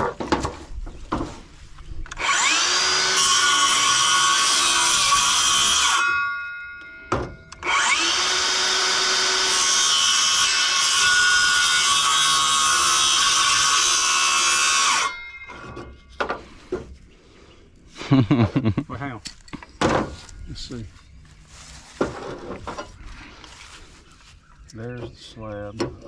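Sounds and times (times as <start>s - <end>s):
power tool whining: 2.0s - 16.1s.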